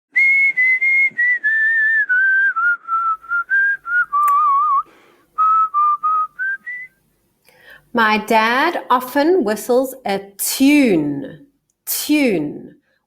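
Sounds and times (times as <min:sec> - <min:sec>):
person whistling: 0:00.1 - 0:07.0
faint click: 0:04.2 - 0:04.4.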